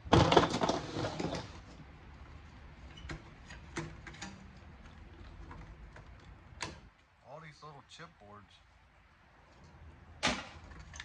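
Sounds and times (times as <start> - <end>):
parts rattling and clicking: 2.9 - 6.8, 10.6 - 11.0.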